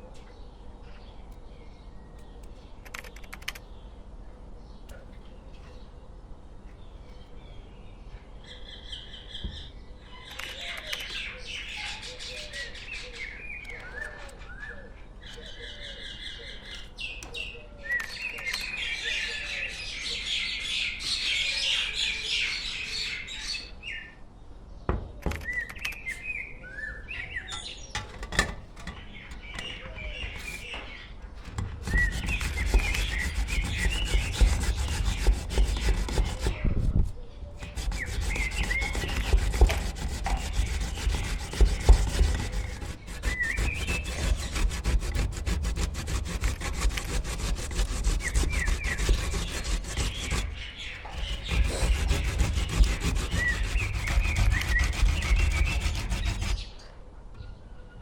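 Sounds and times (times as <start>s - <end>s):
birds chirping: 0.0s - 58.0s
ginger scraping on a grater: 27.5s - 30.8s, 31.4s - 56.7s.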